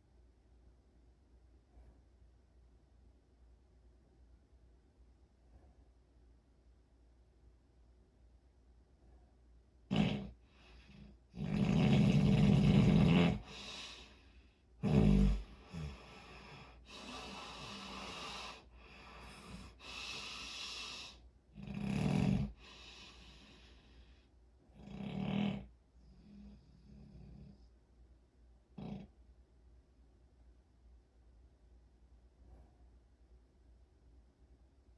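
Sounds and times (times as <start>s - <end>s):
quiet breathing: 1.4s - 2.6s, 5.3s - 6.4s, 8.8s - 28.2s, 32.2s - 33.4s
person snoring: 9.9s - 10.4s, 11.3s - 14.2s, 14.8s - 23.2s, 24.8s - 25.7s.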